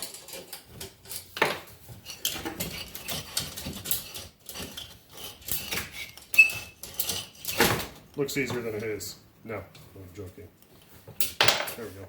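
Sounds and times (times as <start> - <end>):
metal tools clinking: 0.0 - 8.0.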